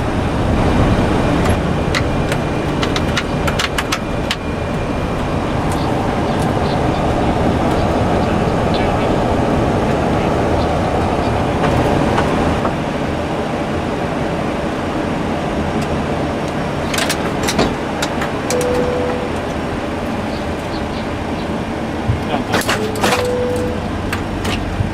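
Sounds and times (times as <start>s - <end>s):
flight deck rumble and hiss: 0.0s - 24.9s
short single-pitched beep: 18.5s - 19.4s, 23.2s - 23.8s.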